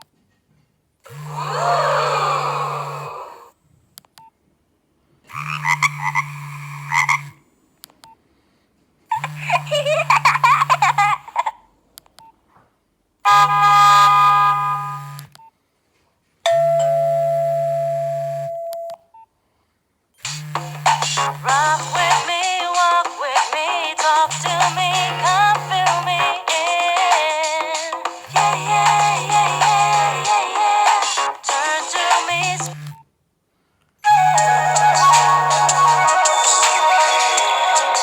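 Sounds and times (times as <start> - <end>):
steady low buzz: 20.2 - 22.2, 24.3 - 26.3, 28.3 - 30.3, 32.3 - 33.0
mobile phone ringtones: 20.3 - 26.5, 27.1 - 33.0, 34.1 - 38.0.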